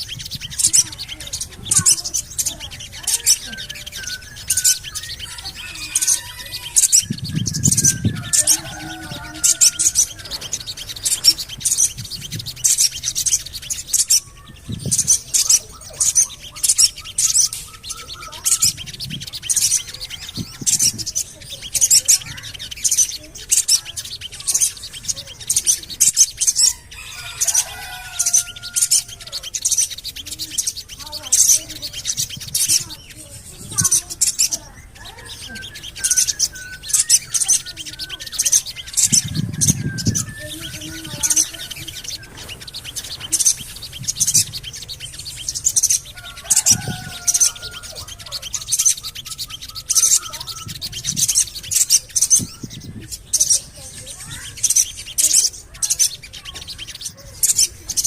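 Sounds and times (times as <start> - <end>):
bird short high chirps: 0.0 - 58.0
low warbling bird notes: 26.6 - 55.1.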